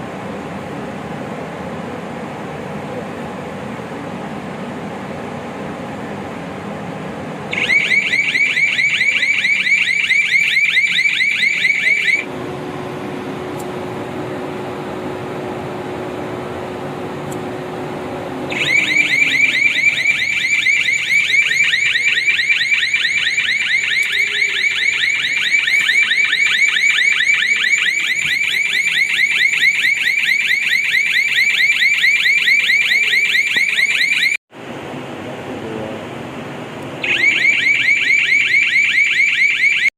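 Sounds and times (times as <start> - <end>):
steady low hum: 0.0 - 28.6
high-pitched pulsing alarm beep: 7.5 - 12.3, 18.5 - 34.4, 37.0 - 39.9.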